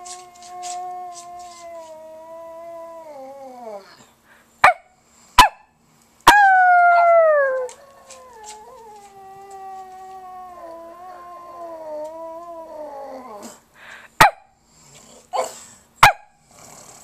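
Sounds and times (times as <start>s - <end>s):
dog howling: 6.3s - 13.6s.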